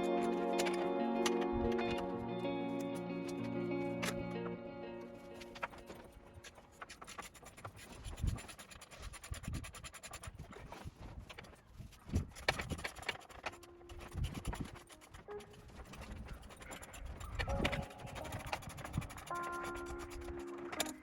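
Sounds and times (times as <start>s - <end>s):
scratching and scraping on metal: 6.4s - 21.0s
small clicks: 12.3s - 21.0s.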